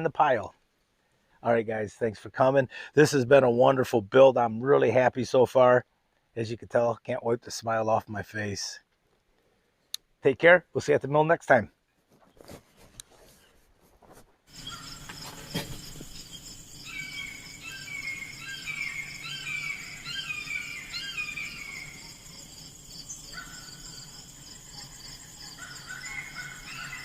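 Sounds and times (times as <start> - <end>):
bird chirping: 14.5 - 27.0
insects trilling: 14.5 - 27.0.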